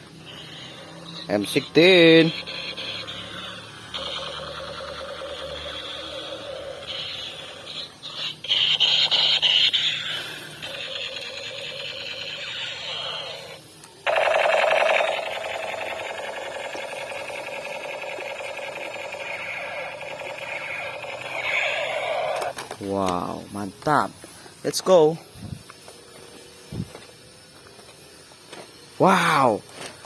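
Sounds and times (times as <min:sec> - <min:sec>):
toy gun rapid-fire buzzing: 0:00.0 - 0:22.6.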